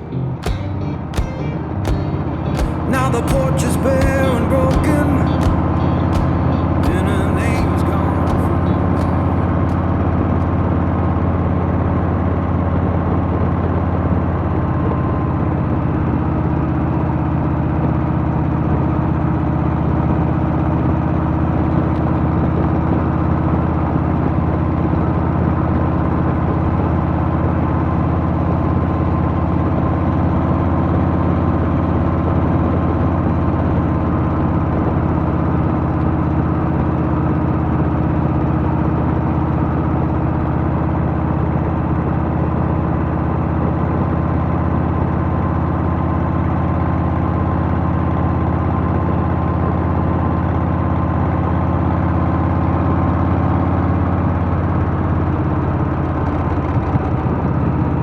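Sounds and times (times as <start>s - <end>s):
motorcycle engine running: 0.0s - 13.8s.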